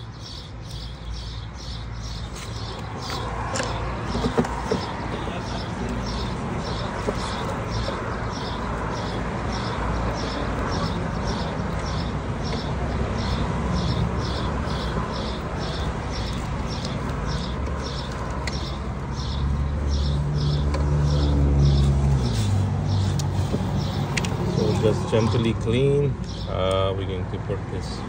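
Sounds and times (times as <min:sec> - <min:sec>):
brush scratching on sandpaper: 0:21.8 - 0:23.8.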